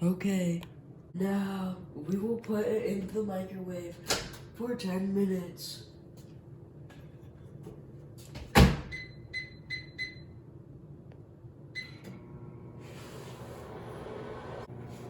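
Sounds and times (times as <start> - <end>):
microwave humming: 8.5 - 15.0
keypad beeps: 8.9 - 10.3.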